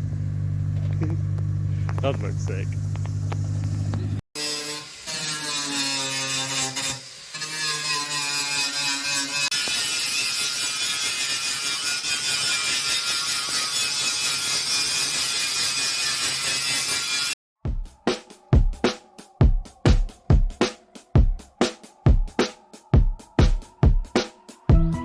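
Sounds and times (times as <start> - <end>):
angle grinder grinding metal: 1.8 - 17.4.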